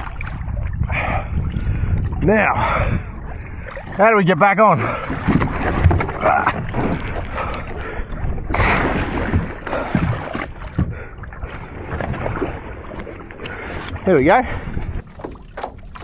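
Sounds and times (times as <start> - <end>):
water splashing against hulls: 0.0 - 16.0
loud splash: 8.5 - 10.7
knocks on the hull: 15.2 - 16.0.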